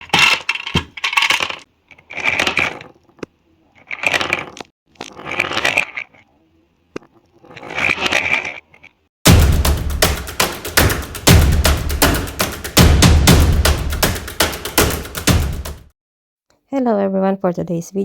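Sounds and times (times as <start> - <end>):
rattling and clattering: 0.0 - 1.6.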